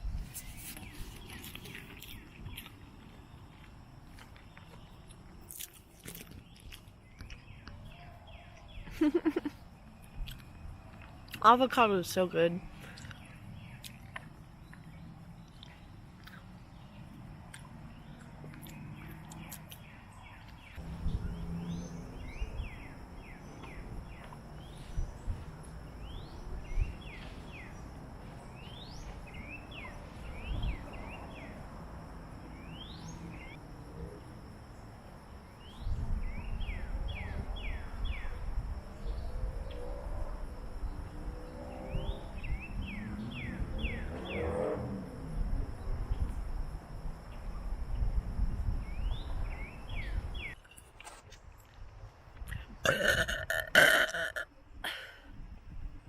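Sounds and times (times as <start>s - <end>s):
small birds chirping: 0.1s - 33.6s, 40.8s - 44.6s
low rumbling noise: 20.8s - 50.6s.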